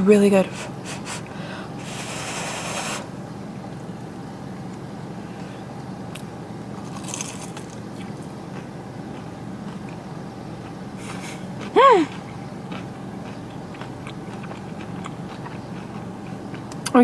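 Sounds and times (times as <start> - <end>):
steady low hum: 0.0 - 17.0
chewing with crisp crunch: 3.6 - 17.0.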